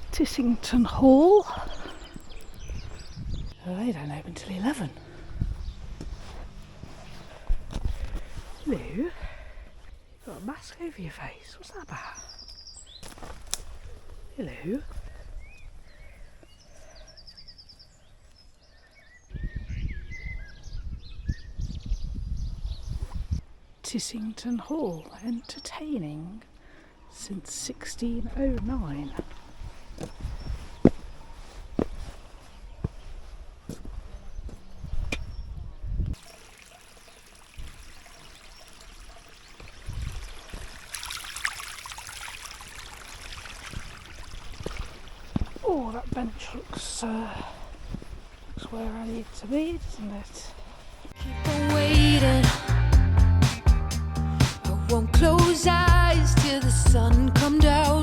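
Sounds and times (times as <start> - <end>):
low bumps: 0.0 - 9.2
low rumbling on microphone: 0.0 - 9.9
small birds chirping: 0.0 - 41.4, 43.5 - 52.4
water trickling: 36.2 - 47.0.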